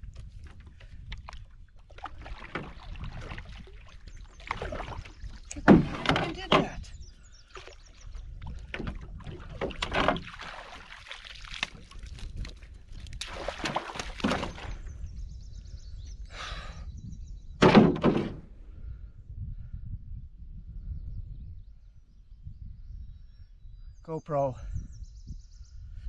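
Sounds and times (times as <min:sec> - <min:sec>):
knocks and thumps in a canoe: 0:00.0 - 0:15.2, 0:17.5 - 0:18.5.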